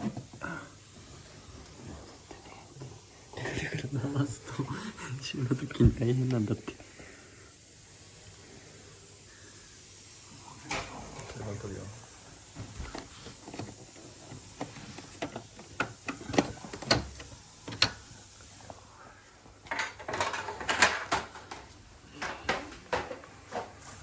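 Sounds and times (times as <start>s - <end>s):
hard plastic parts rattling: 12.8s - 18.0s, 19.6s - 23.8s.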